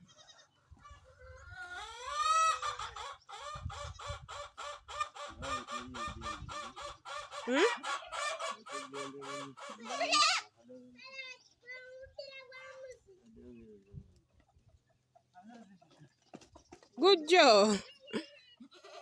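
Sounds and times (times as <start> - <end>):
chicken clucking: 0.2 - 10.2.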